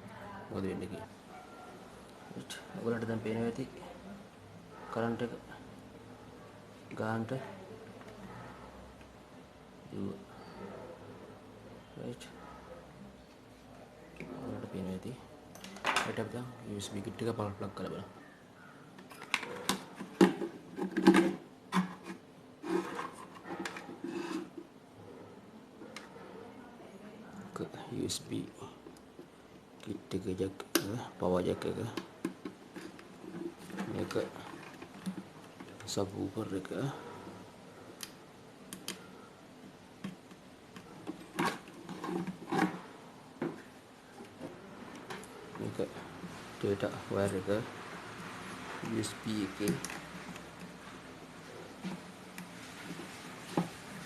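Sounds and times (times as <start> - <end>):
rubbing scrapes: 20.8 - 24.7
plugs clicking into connectors: 38.0 - 39.0.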